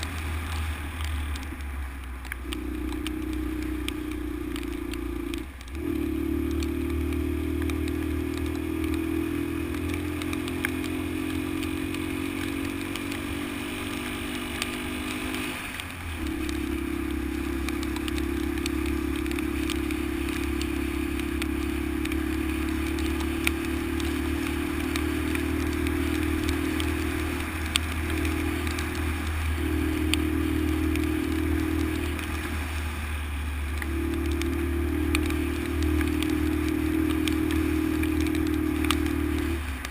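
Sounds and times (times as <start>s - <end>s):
motorcycle engine running: 0.0s - 39.9s.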